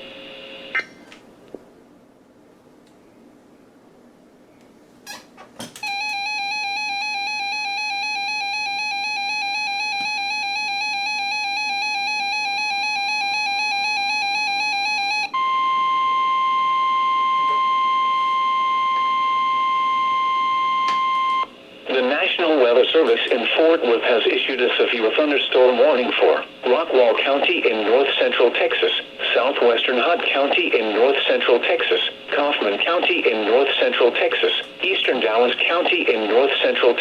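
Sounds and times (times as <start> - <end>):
steady single-tone alert: 5.8 - 13.2
harsh two-tone alarm: 5.8 - 21.5.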